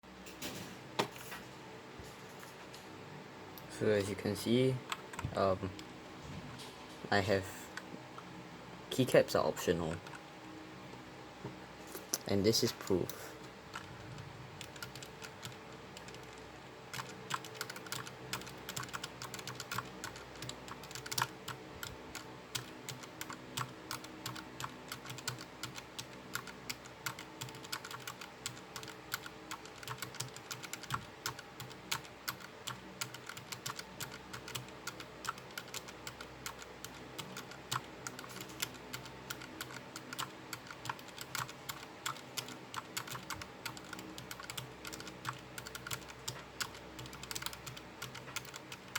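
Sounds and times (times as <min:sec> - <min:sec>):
fast typing on keyboard switches: 0:12.9 - 0:48.9.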